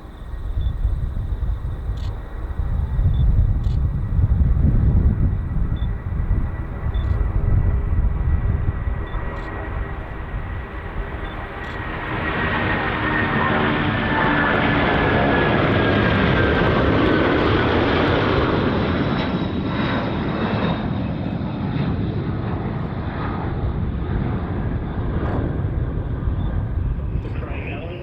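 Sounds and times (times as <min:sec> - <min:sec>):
high jet engine whine: 0:00.0 - 0:28.0
jet engines rumbling: 0:00.0 - 0:28.0.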